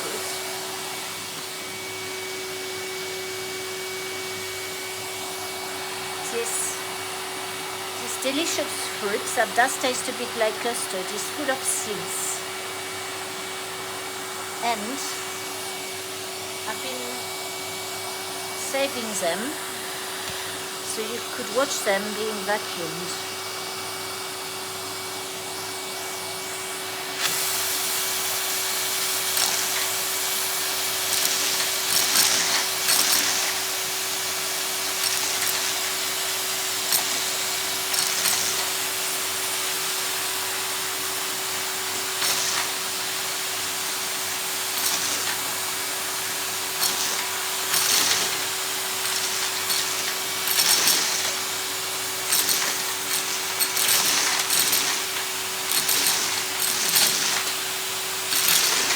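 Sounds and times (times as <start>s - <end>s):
vacuum cleaner running: 0.0s - 58.9s
seeds clattering up nozzle: 31.0s - 33.7s, 46.8s - 51.5s, 52.3s - 57.6s, 58.3s - 58.9s.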